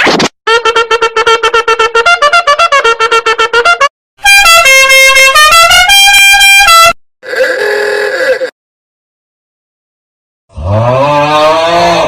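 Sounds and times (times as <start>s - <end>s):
brassy honking tune: 0.5s - 7.0s
short repeated horn notes: 0.5s - 7.0s.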